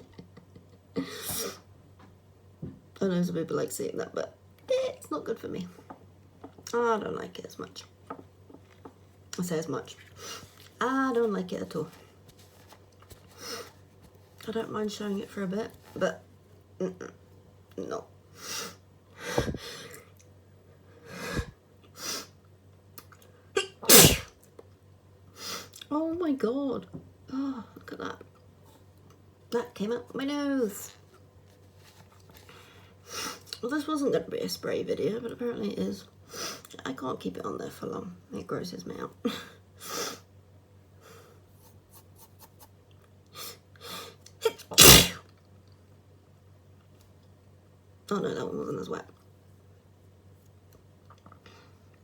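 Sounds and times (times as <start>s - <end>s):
person sneezing: 23.6s - 24.3s, 44.4s - 45.2s
sharp in-breaths: 44.8s - 45.2s.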